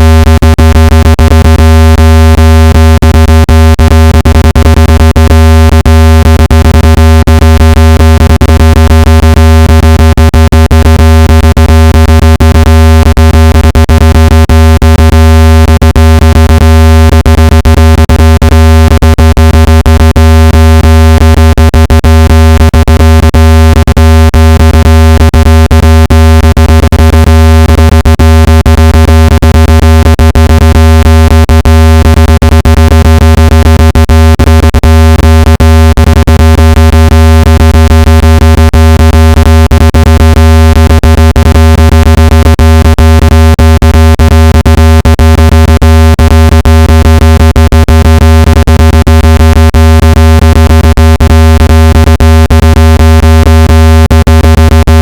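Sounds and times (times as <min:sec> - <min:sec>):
low electronic tone crackling: 0:00.0 - 0:42.0.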